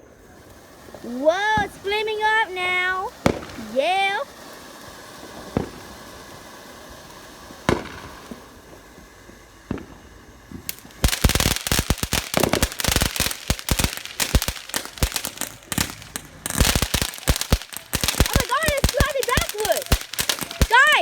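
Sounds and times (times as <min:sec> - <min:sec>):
fireworks cracking and banging: 0:00.0 - 0:21.0.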